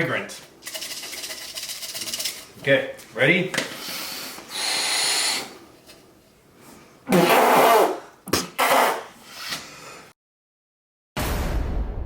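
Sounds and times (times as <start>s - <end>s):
man sniffing hard: 3.8s - 5.6s.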